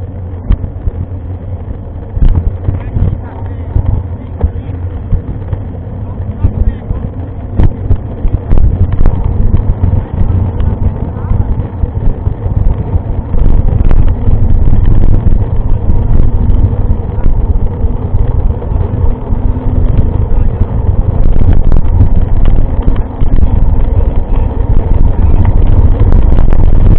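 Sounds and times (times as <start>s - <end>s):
wind and tyre rumble: 0.0s - 26.9s.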